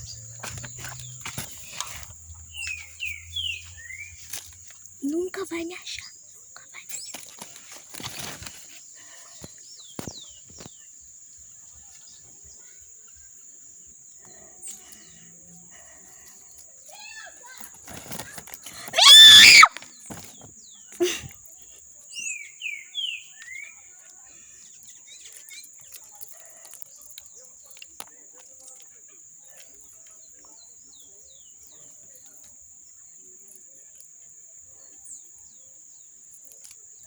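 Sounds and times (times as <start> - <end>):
birds chirping: 0.0 - 10.9.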